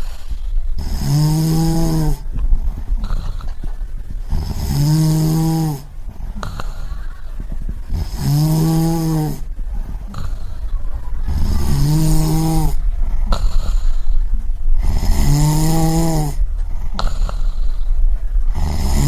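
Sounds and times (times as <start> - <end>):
person snoring: 0.0 - 2.3, 4.3 - 7.1, 7.9 - 9.5, 10.1 - 14.2, 14.8 - 17.9, 18.5 - 19.0
noisy breathing: 0.0 - 19.0.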